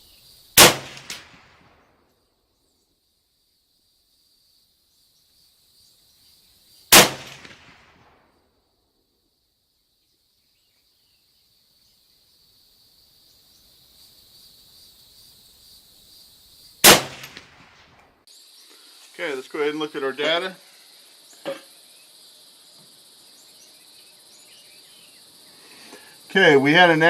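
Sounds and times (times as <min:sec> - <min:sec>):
faint high hiss: 0:00.0 - 0:27.0
rifle shots with echo: 0:00.6 - 0:01.9, 0:06.9 - 0:08.2, 0:16.8 - 0:18.0.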